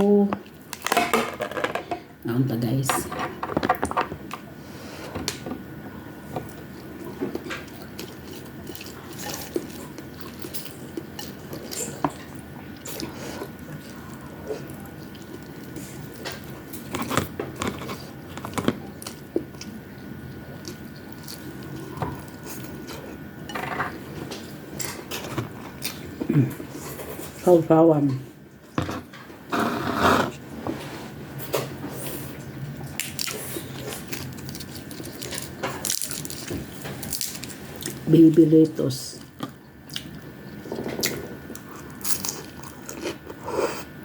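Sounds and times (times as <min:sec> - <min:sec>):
faint steady high hum: 0:00.0 - 0:44.0
person chewing: 0:06.4 - 0:23.2, 0:32.9 - 0:38.0, 0:39.4 - 0:44.0.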